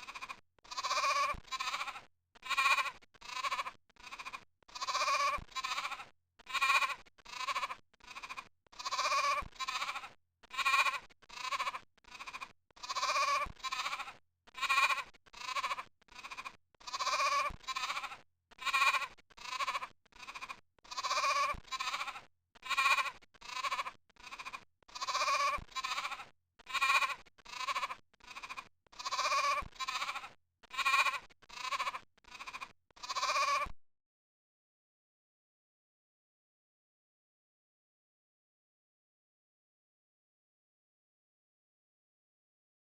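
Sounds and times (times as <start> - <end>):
goat bleating: 0.0 - 33.8.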